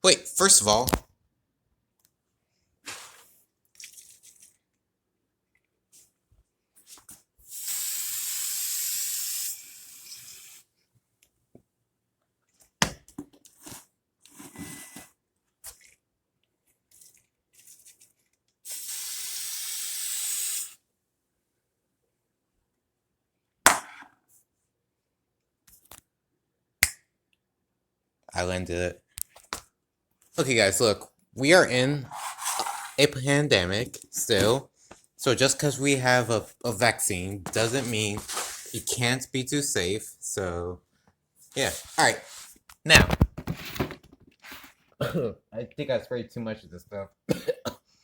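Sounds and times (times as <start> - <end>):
aerosol spray hissing: 7.5 - 10.7, 18.7 - 20.8.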